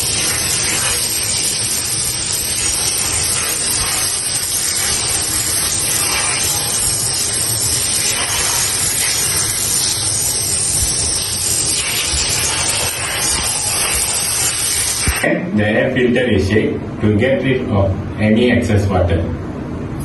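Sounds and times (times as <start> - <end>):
running water pouring: 0.0 - 15.3.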